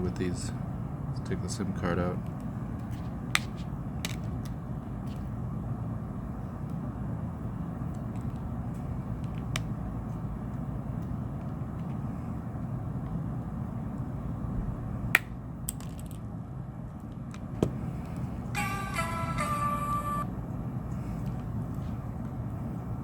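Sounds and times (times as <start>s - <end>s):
steady low hum: 0.0s - 23.0s
tune of steady tones: 18.5s - 20.3s.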